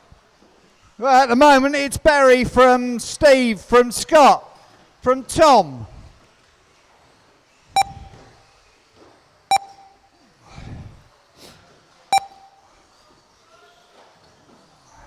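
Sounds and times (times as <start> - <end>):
short electronic beeps: 7.8 - 8.3, 9.5 - 10.1, 12.1 - 12.6.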